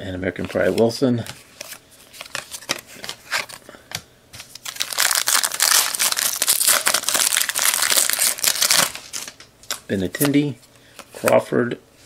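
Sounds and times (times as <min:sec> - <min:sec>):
foil wrapper crinkling: 0:04.4 - 0:09.8.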